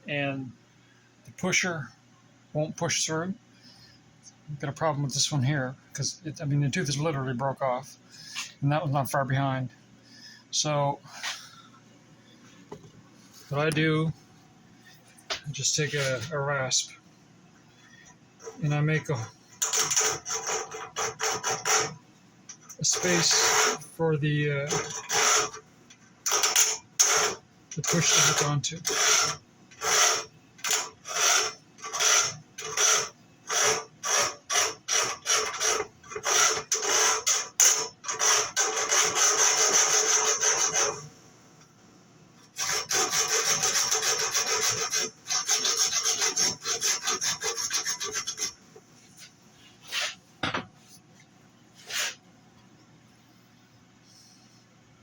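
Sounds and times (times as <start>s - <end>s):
hand rasp filing metal: 18.6s - 22.0s, 22.9s - 23.8s, 24.7s - 25.6s, 26.3s - 41.0s, 42.6s - 48.6s.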